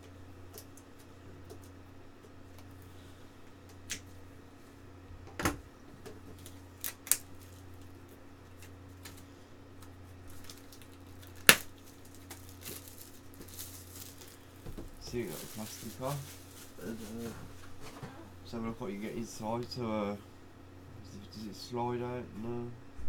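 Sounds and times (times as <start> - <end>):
steady low hum: 0.0 - 23.0
plastic wrap crackling: 6.2 - 17.8.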